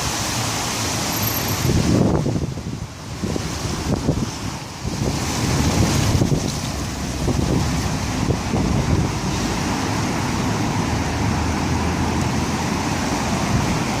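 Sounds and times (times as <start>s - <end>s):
gusty wind buffeting microphone: 1.6s - 14.0s.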